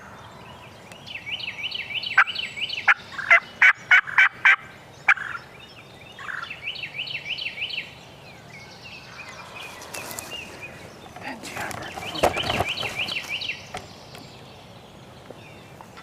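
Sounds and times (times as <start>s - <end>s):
turkey rattling gobble: 2.9s - 5.4s.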